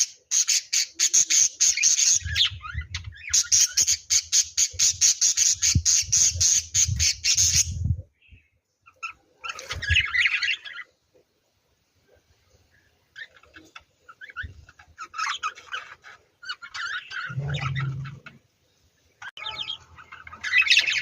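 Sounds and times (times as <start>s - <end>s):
bird squawking: 13.2s - 18.4s.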